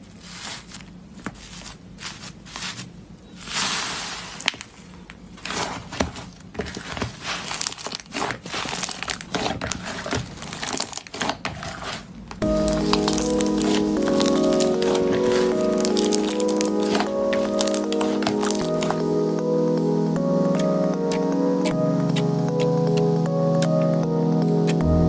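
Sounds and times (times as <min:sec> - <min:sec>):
music: 0:12.4 - 0:25.0.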